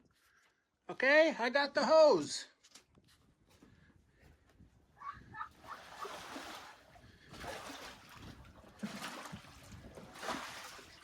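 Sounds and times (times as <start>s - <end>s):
water splashing from hose: 5.7s - 11.0s.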